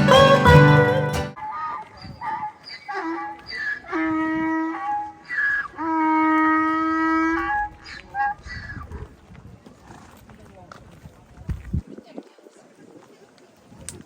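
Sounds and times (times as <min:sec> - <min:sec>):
horn-like wind instrument notes: 0:00.0 - 0:01.4.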